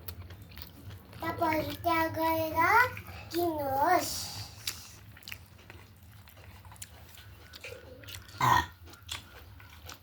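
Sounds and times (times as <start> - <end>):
chewing with crunches: 0.0 - 10.0.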